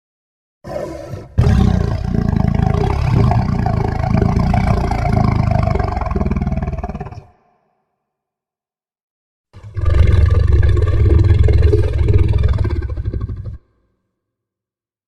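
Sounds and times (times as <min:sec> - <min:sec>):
monster roar: 0:00.7 - 0:07.4.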